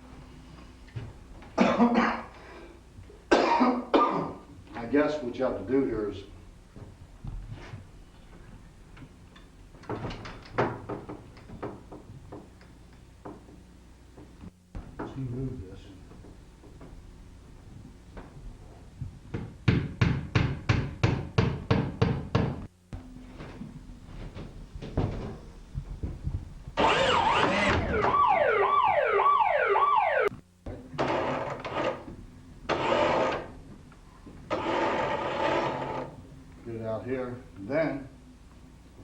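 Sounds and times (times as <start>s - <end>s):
electric alarm siren warbling: 26.8s - 30.3s.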